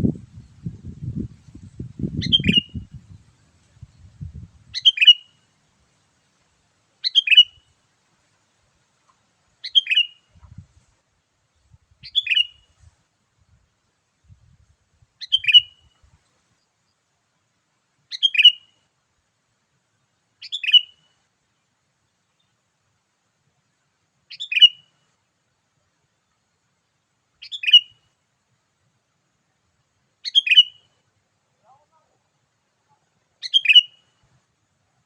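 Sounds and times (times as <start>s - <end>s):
bulbul call: 32.9s - 34.1s.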